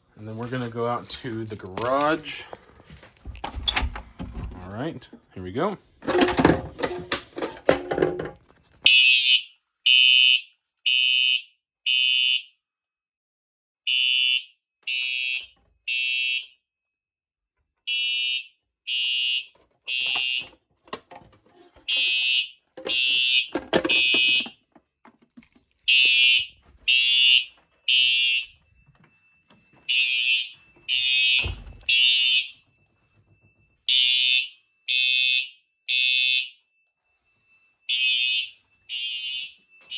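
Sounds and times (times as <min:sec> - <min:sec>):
pull station clatter: 0:06.0 - 0:08.4
fire alarm horn blasts: 0:08.9 - 0:12.6, 0:13.9 - 0:16.7, 0:17.8 - 0:20.6, 0:21.7 - 0:24.6, 0:25.9 - 0:39.9.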